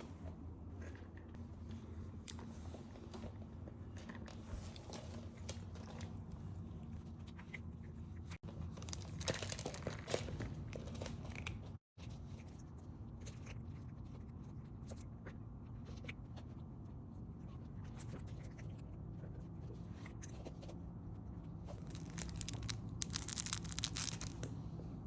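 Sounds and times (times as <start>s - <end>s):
cat crunching dry treats: 8.7s - 11.6s, 21.7s - 24.5s.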